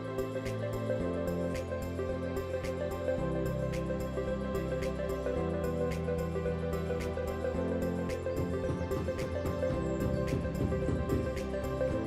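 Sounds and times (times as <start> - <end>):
soft slow instrumental music: 0.0 - 12.0.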